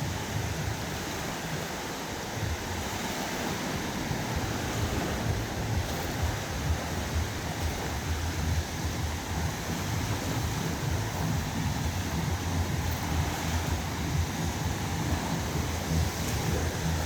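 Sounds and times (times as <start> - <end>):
sea surf on beach: 0.0 - 17.0
wind buffeting microphone: 0.0 - 17.0.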